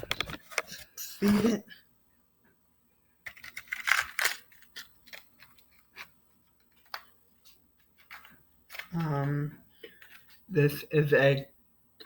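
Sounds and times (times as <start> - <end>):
packaging rustling and crinkling: 3.3 - 9.1.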